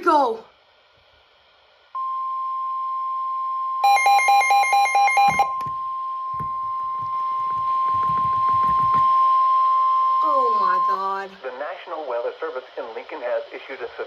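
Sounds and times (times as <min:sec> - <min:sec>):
steady high alarm tone: 0:02.0 - 0:11.4
rapid alternating beeps: 0:03.8 - 0:11.4.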